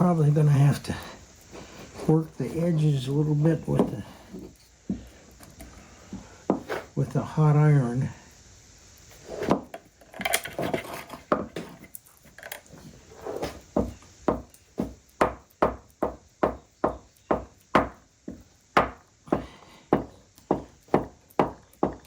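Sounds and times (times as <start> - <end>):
tools and wood clattering: 9.3 - 15.3
sharp knocks on wood: 13.5 - 22.0.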